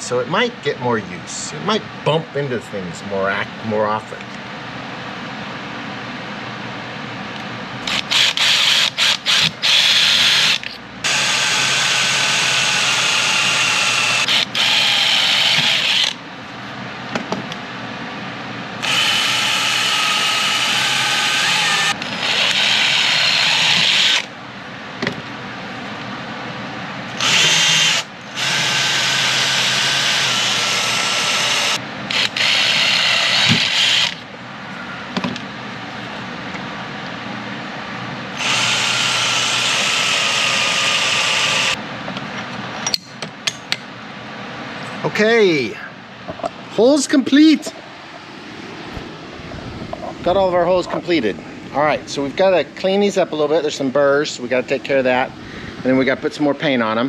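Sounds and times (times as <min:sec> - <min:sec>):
power drill boring through metal: 0:07.8 - 0:16.2, 0:18.8 - 0:24.3, 0:27.2 - 0:34.2, 0:38.4 - 0:41.8.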